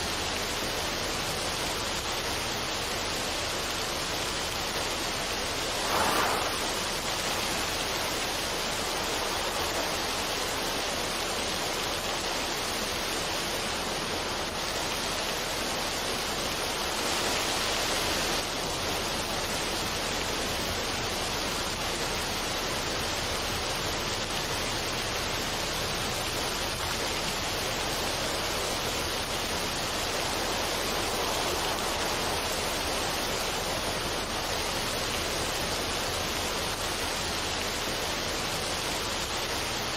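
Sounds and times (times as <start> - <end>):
water rushing over rocks: 0.1 - 39.9
water splash: 5.5 - 11.7.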